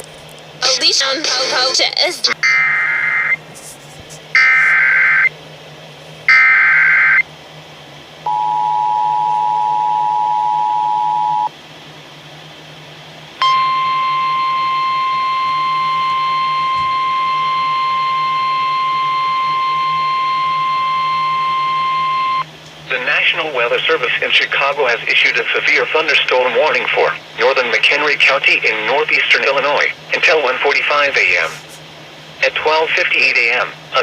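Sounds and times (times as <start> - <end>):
faint hum: 0.0 - 34.0
steady single-pitch alarm tone: 2.4 - 3.4, 4.4 - 5.4, 6.3 - 7.3, 8.2 - 11.5, 13.4 - 22.5
screeching data bursts: 4.4 - 5.3, 13.4 - 22.5
two-tone attention signal: 8.3 - 11.5, 13.4 - 22.5.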